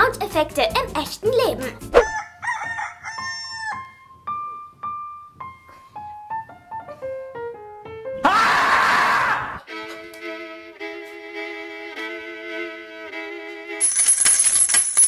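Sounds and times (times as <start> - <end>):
rooster crowing: 2.0 - 4.0.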